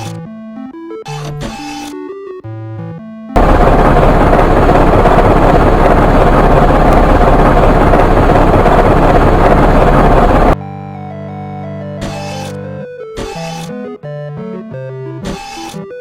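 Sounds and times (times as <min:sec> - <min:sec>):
construction machine engine rumbling: 0:03.4 - 0:10.6.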